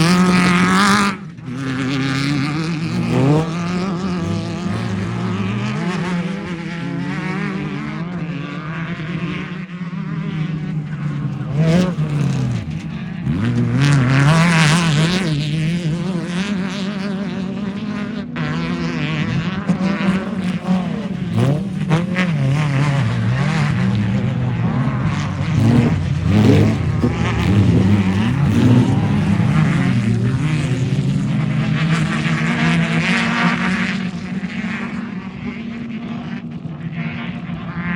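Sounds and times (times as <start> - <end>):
race vehicle engines revving: 0.0 - 37.9.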